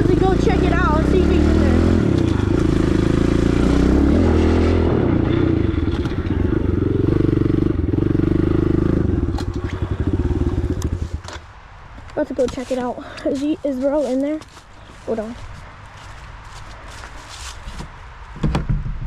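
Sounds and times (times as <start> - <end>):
pit bike engine running: 0.0 - 11.3.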